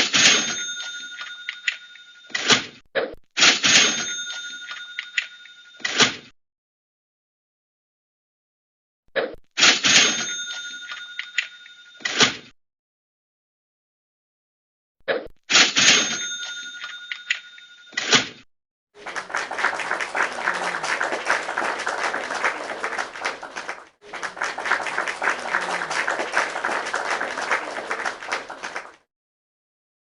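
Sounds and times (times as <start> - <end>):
bell-like ding: 0.2 - 2.4, 3.8 - 5.8, 10.0 - 12.0, 15.8 - 18.0
dense clapping-like crackle: 19.0 - 29.0.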